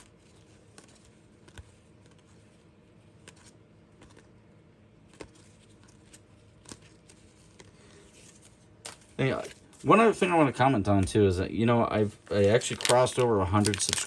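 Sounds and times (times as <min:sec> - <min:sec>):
trading cards clicking: 0:12.4 - 0:14.0.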